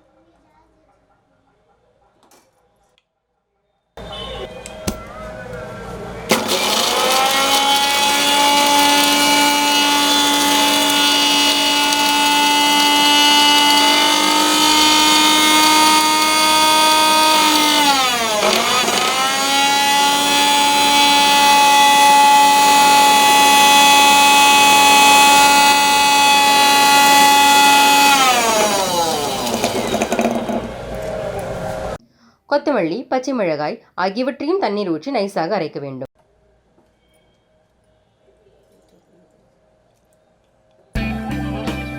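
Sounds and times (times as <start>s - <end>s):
mixer grinder motor whine: 6.3s - 32.0s.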